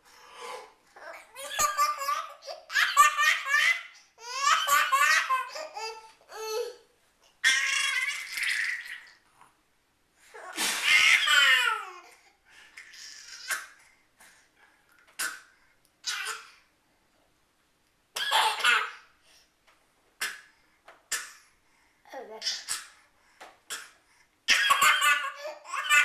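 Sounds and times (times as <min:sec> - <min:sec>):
baby laughing and babbling: 0:01.0 - 0:09.2, 0:10.3 - 0:13.8, 0:18.2 - 0:19.0, 0:24.5 - 0:26.0.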